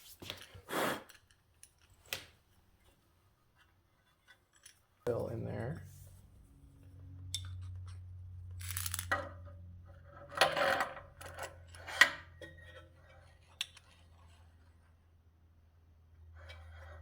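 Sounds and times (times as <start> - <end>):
metallic clinks and rattles: 4.2 - 5.2, 7.2 - 9.5.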